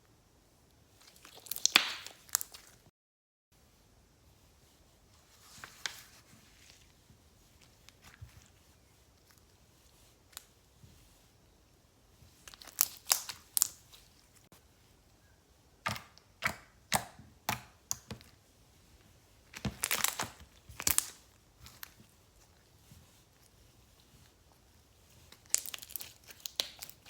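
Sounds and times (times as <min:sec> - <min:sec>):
slime squeezed sticky crackling: 0:01.0 - 0:02.8, 0:12.4 - 0:14.4, 0:19.5 - 0:22.7, 0:25.2 - 0:27.0.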